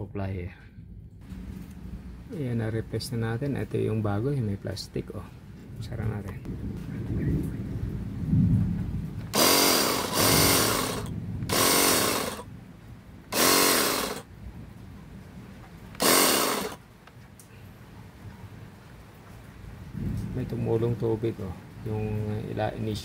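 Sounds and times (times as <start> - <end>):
pressure washer motor bursts: 9.3 - 12.5, 13.3 - 14.3, 15.9 - 16.8.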